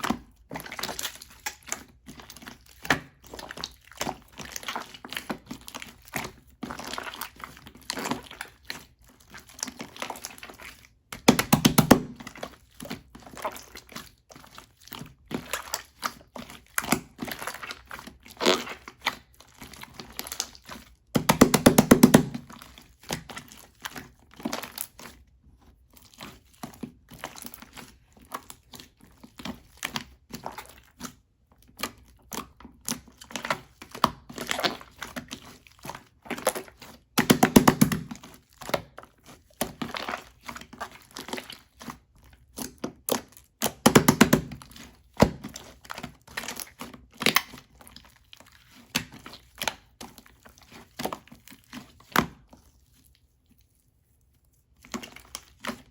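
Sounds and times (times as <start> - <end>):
slime crackling and popping: 42.5 - 47.7.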